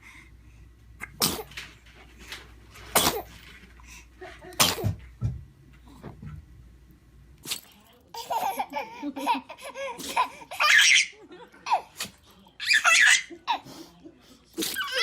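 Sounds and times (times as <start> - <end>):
baby laughing: 8.2 - 11.9, 12.6 - 13.6.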